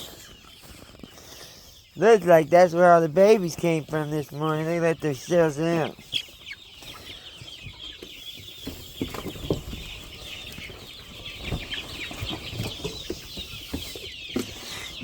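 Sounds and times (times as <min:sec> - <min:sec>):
chickens clucking: 0:00.0 - 0:15.0
chickens peeping and chirping: 0:00.0 - 0:15.0.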